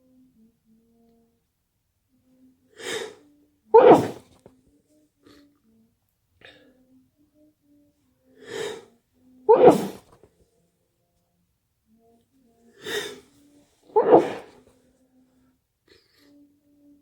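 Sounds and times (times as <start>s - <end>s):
loud sneeze: 2.8s - 4.4s, 9.5s - 10.2s, 12.8s - 13.2s, 14.0s - 14.6s
gasping in-breath: 8.4s - 8.9s, 12.8s - 13.2s.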